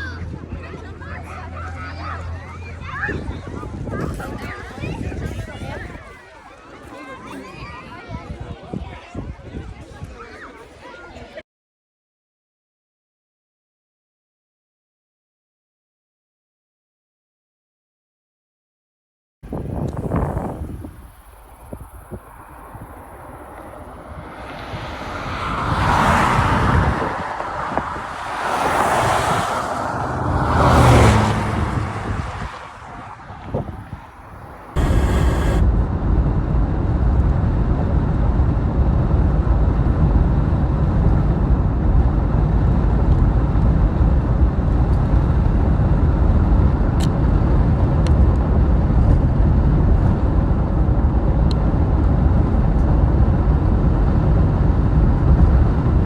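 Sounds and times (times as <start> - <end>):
vehicles passing by: 0.0 - 5.6, 19.5 - 35.7
low driving rumble: 19.5 - 25.8, 32.9 - 56.0.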